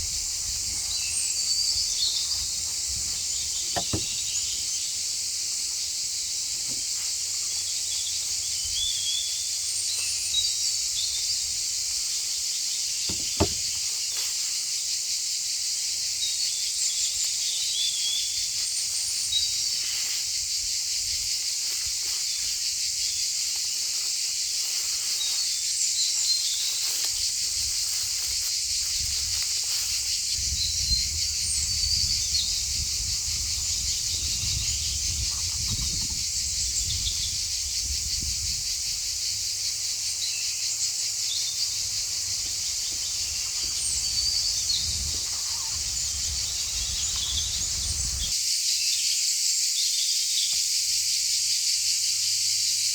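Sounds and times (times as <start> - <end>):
high-pitched insect chorus: 0.0 - 52.9
bird chirps: 40.2 - 49.1.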